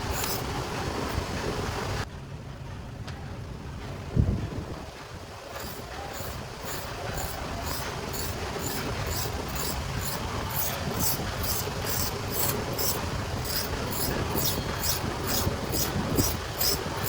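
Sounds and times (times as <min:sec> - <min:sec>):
file rasping on steel: 0:00.0 - 0:00.5, 0:05.5 - 0:17.0.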